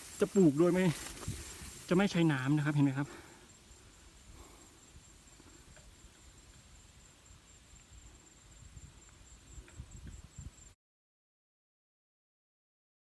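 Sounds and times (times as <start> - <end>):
faint ticks: 5.3 - 6.7, 9.0 - 10.6.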